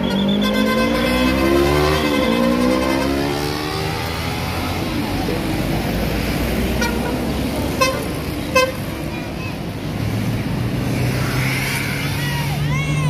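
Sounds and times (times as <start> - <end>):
horn toots: 0.0 - 3.8, 6.8 - 8.9
bus engine and road noise: 0.0 - 13.0.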